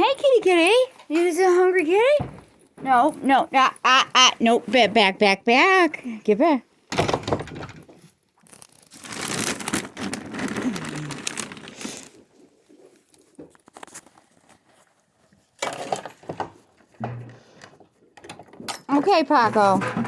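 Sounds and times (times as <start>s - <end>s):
rustling and crinkling handling: 0.0s - 6.0s, 7.7s - 20.0s.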